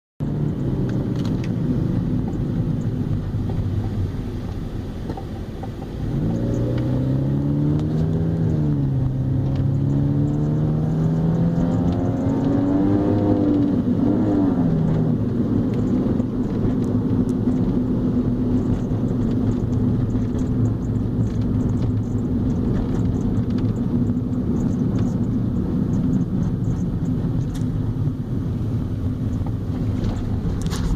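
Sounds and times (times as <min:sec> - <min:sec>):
car engine accelerating: 0:00.2 - 0:30.9.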